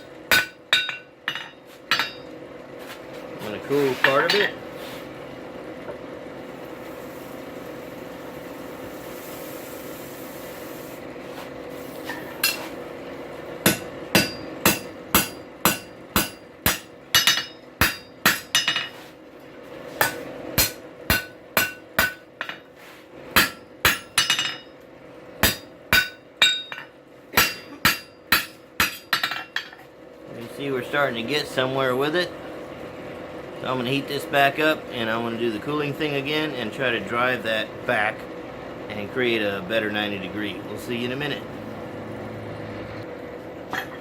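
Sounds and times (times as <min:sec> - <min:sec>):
hammer striking steel on anvil: 0:00.0 - 0:02.3, 0:13.6 - 0:19.0, 0:20.0 - 0:22.6, 0:23.4 - 0:24.8, 0:25.4 - 0:29.8
steady hum: 0:00.0 - 0:44.0.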